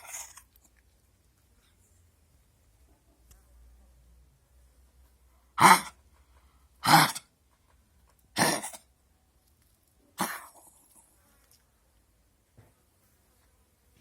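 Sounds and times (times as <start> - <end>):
dog coughing: 5.6 - 6.0, 6.8 - 7.3, 8.3 - 8.9, 10.2 - 10.8.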